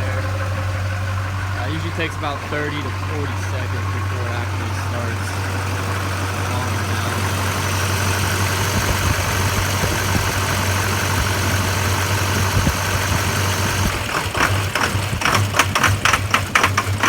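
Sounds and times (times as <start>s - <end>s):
diesel engine rough idling: 0.0s - 17.0s.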